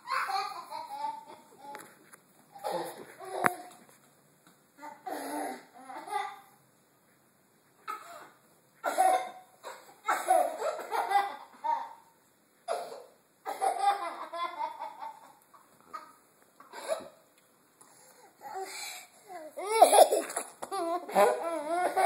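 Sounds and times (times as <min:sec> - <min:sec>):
toddler laughing: 0:19.3 - 0:22.0.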